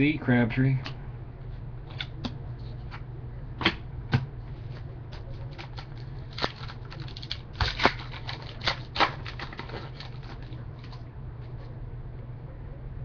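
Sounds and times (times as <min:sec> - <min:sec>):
low hum: 0:00.0 - 0:13.0
trading cards rustling and clicking: 0:05.1 - 0:11.6.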